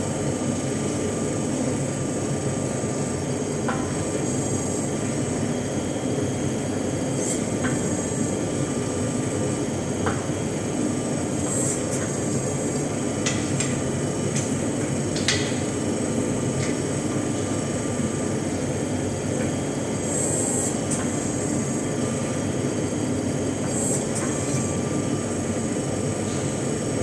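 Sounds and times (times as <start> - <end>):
workshop equipment roaring: 0.0 - 27.0.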